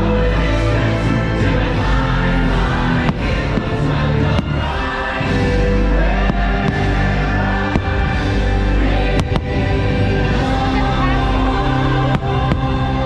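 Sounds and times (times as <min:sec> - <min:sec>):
choir singing: 0:00.0 - 0:13.0
orchestral music: 0:00.0 - 0:13.0
firework bangs: 0:02.8 - 0:10.7.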